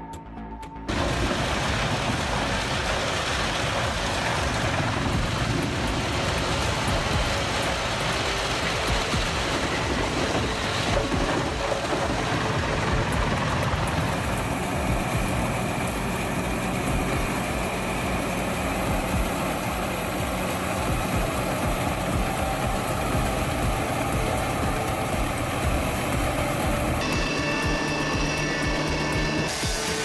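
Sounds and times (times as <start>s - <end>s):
heavy machine engine humming: 0.9s - 30.0s.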